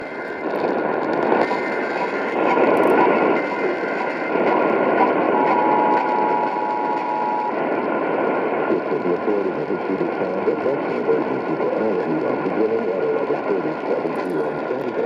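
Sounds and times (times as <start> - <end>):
radio static hiss: 0.0 - 15.0.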